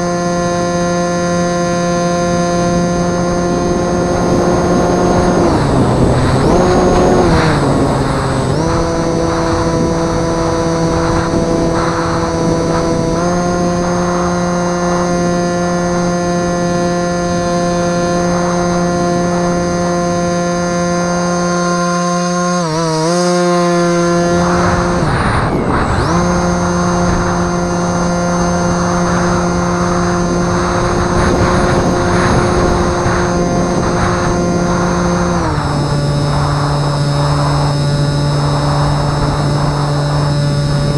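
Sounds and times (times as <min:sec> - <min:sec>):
electric motor and propeller whine: 0:00.0 - 0:40.9
wind rumble on microphone: 0:00.0 - 0:40.9.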